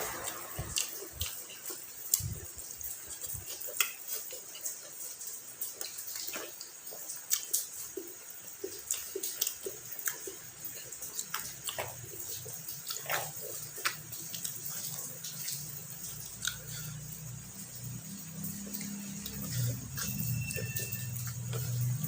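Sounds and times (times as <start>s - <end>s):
person chewing food: 0.0s - 22.0s
wet mouth clicks and smacks: 12.7s - 17.0s.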